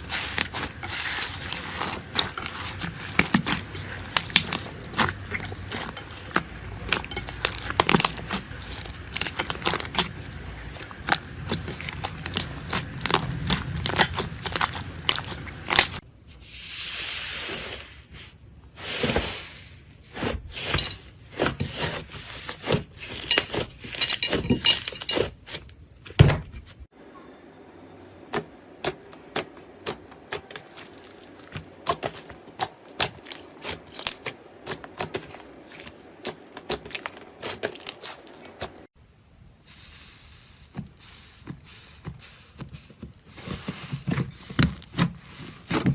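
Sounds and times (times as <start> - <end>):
slime crackling and popping: 0.0 - 16.0, 28.8 - 38.8
slime squishing: 0.0 - 16.0, 28.3 - 38.9, 40.2 - 45.9.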